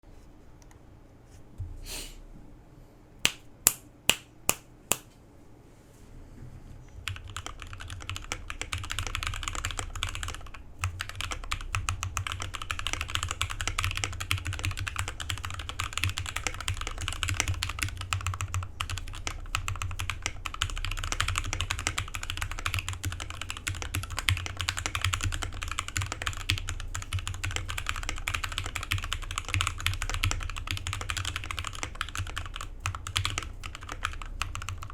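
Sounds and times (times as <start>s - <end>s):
mechanical keyboard typing: 7.0s - 34.9s.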